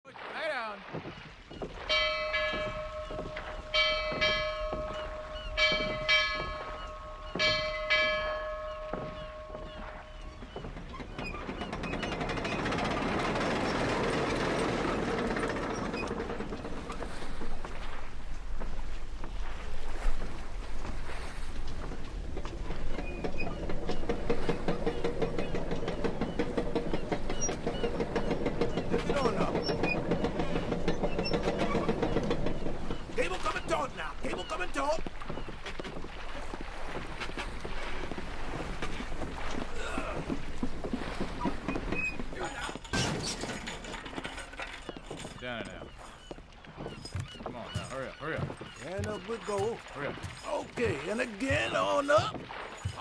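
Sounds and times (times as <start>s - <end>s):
faint knocks: 1.0s - 53.0s.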